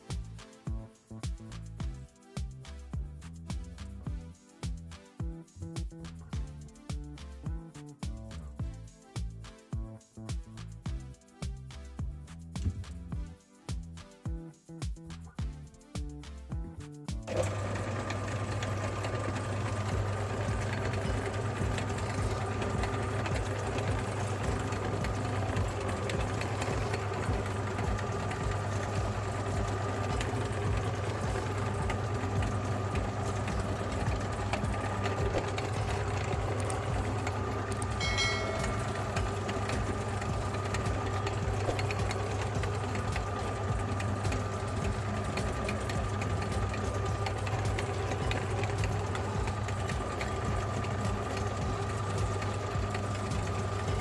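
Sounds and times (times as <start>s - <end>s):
meat grinder motor humming: 17.3s - 54.0s.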